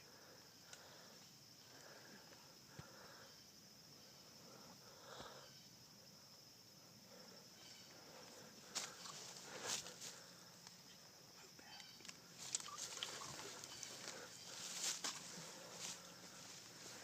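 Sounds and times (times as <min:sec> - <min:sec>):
faint outdoor hiss: 0:00.0 - 0:17.0.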